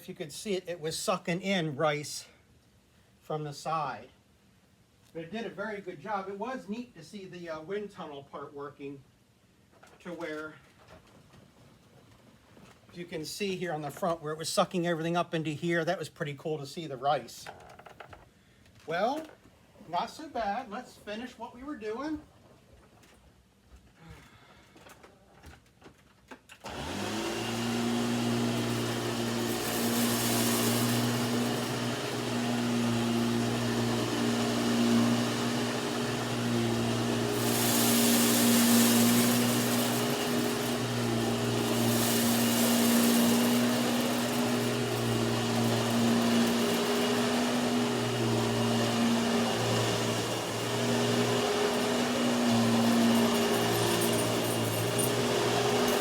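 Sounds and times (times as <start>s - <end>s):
vacuum cleaner running: 26.6s - 56.0s
vacuum picking up rice: 26.6s - 56.0s.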